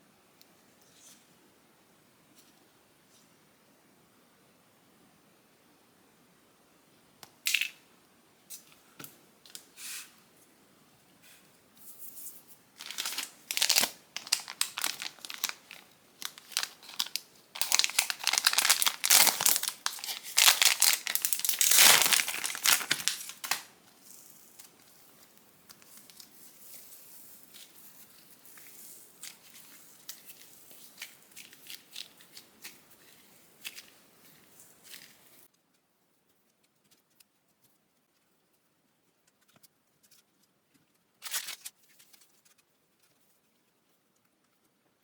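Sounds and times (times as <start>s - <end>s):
material crinkling and tearing: 12.8s - 23.7s.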